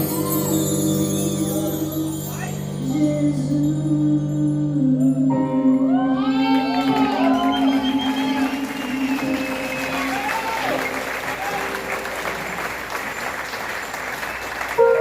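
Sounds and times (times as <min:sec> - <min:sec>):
live music: 0:00.0 - 0:15.0
crowd noise: 0:06.2 - 0:15.0.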